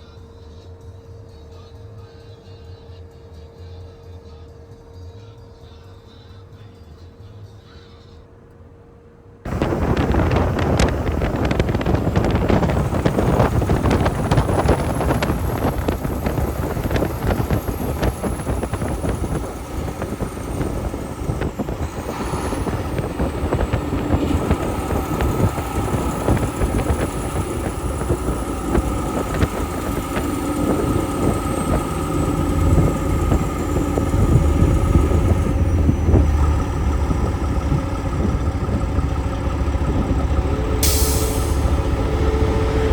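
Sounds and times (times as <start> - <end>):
road noise rumble: 6.2 - 42.9
truck diesel engine running: 9.5 - 42.9.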